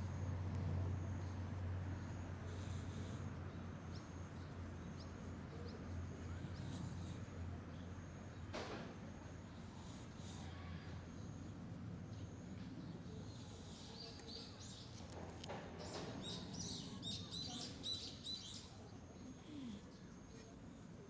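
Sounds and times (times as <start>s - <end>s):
small birds chirping: 0.0s - 8.6s, 9.2s - 21.0s
low steady background rumble: 0.0s - 21.0s.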